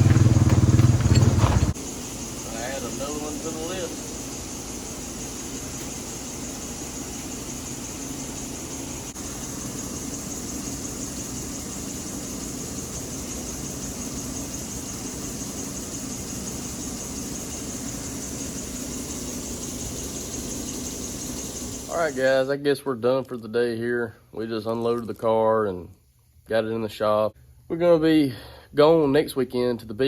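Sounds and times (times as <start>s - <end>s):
vehicle engine and road drone: 0.0s - 2.0s
constant hiss: 0.0s - 30.0s.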